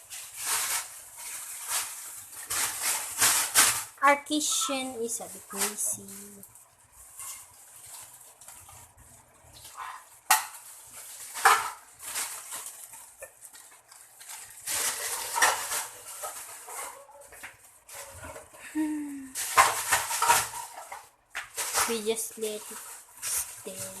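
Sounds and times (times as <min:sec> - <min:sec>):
metal utensil scraping a pan: 0:14.3 - 0:18.5.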